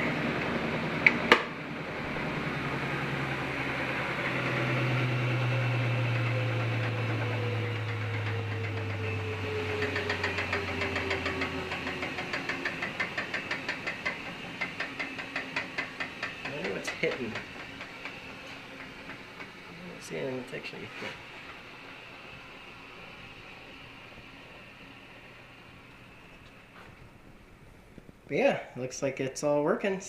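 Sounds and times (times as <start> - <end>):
washing machine drum hum: 0.0 - 20.6
rhythmic ticking of spinning drum: 0.0 - 20.8.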